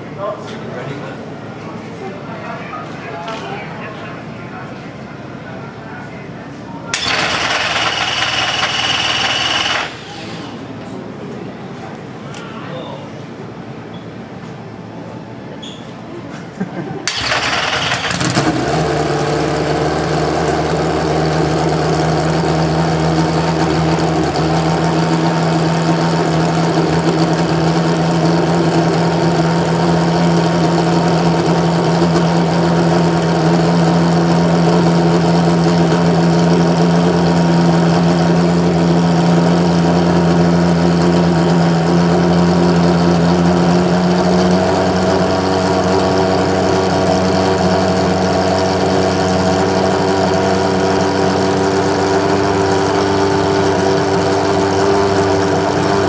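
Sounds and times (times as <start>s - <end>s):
race car engine idling: 6.6s - 11.4s, 17.0s - 56.0s.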